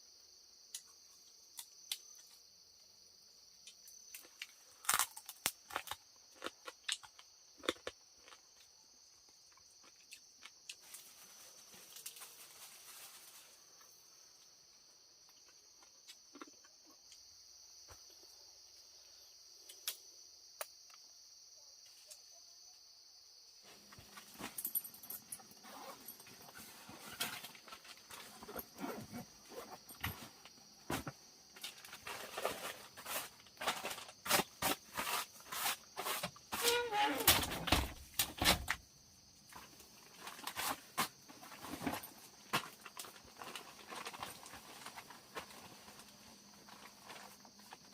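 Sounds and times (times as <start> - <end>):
crickets trilling: 0.0 - 47.9
rustling and crackling: 10.6 - 14.4, 23.6 - 38.8, 39.5 - 47.9.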